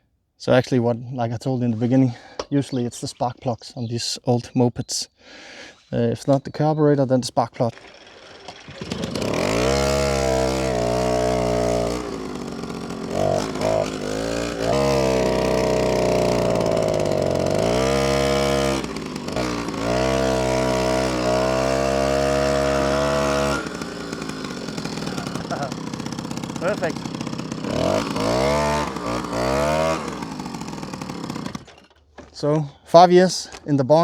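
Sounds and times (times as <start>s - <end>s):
moped engine revving: 7.7s - 31.8s.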